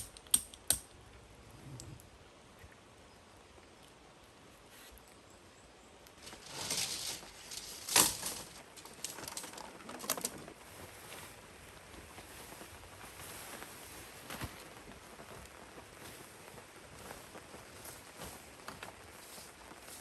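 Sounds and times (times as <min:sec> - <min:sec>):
sharp clicks and knocks: 0:00.0 - 0:01.0
faint steady hiss: 0:00.0 - 0:20.0
rustling: 0:06.2 - 0:11.4.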